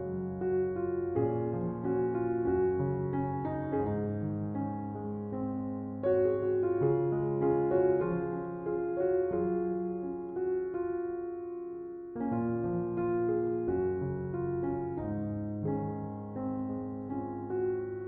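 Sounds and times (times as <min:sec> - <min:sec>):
soft piano chords: 0:00.0 - 0:18.0.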